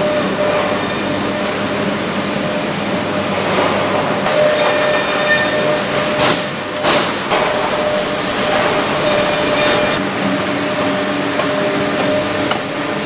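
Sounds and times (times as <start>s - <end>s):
loud rushing sounds: 6.9s - 10.6s
wood-processing machinery hum: 7.0s - 10.0s.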